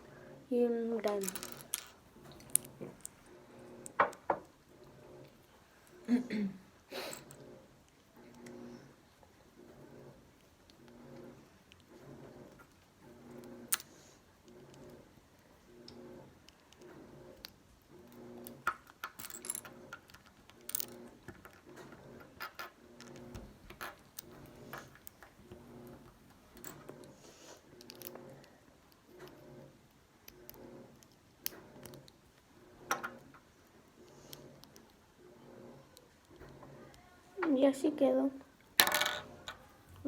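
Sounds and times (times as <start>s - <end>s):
plastic bricks clicking and rattling: 0.9s - 3.2s.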